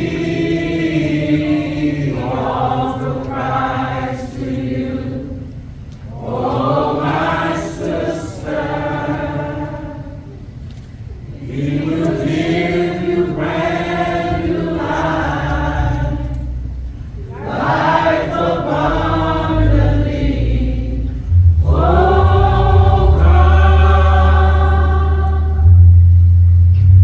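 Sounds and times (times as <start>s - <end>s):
choir singing gospel: 0.0s - 26.1s
deep sustained bass notes: 15.3s - 17.3s, 18.4s - 27.0s.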